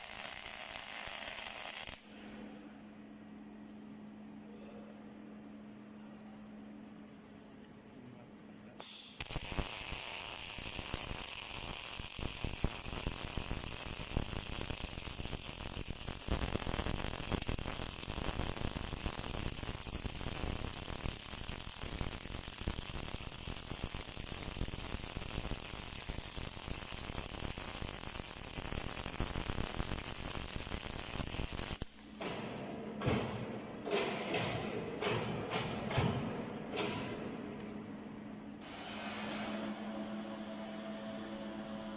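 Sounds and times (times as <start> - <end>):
welding arc crackling: 0.0 - 2.1, 8.8 - 32.0.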